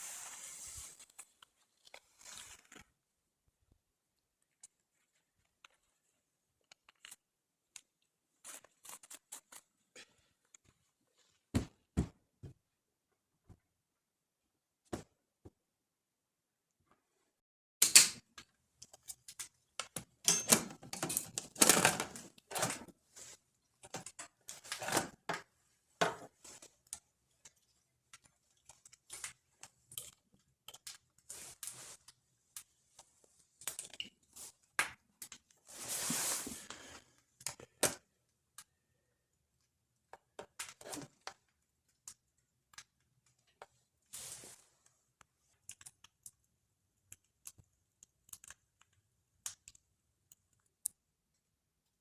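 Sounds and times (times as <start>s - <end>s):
small objects clicking and knocking: 4.4s - 9.6s, 17.8s - 23.0s, 23.7s - 35.6s, 40.0s - 43.9s, 44.8s - 52.0s.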